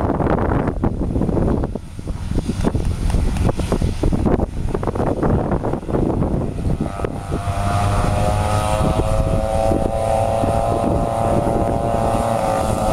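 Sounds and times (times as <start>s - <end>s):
snowmobile engines whining: 0.0s - 12.9s.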